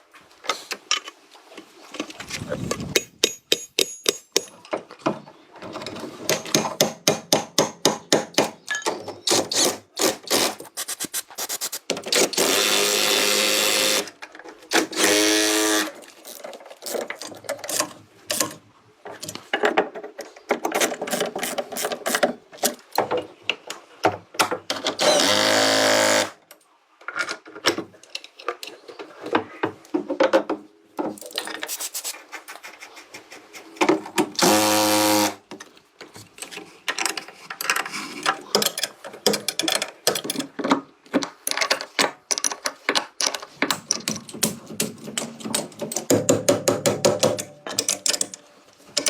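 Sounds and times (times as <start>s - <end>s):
hand tool taps and clicks: 3.0s - 4.6s
power tool running: 12.2s - 14.1s, 14.8s - 15.9s, 25.0s - 26.3s, 34.4s - 35.4s.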